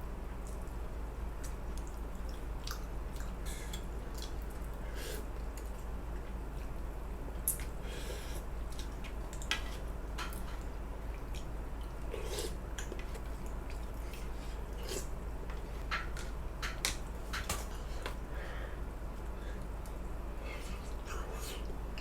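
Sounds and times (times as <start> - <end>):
steady low hum: 0.0 - 22.0
wet eating sounds: 1.4 - 5.9, 8.7 - 15.8.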